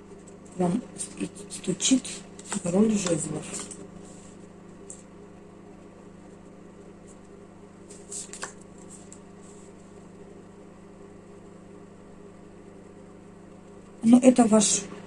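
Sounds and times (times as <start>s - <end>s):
steady low hum: 0.0s - 15.0s
cards rustling: 2.1s - 5.1s, 7.1s - 9.9s.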